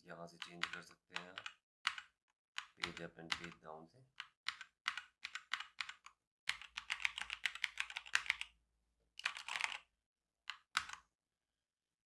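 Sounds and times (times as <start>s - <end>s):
mechanical keyboard keys clacking: 0.4s - 2.0s, 2.6s - 3.6s, 4.5s - 8.4s, 9.2s - 9.8s, 10.5s - 11.0s.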